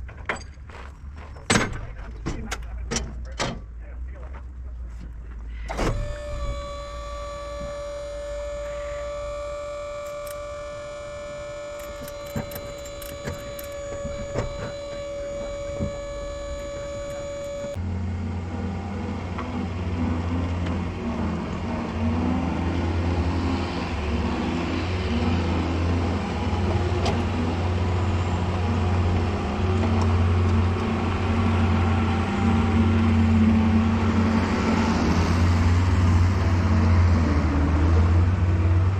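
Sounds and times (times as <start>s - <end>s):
truck engine drone: 3.7s - 38.9s.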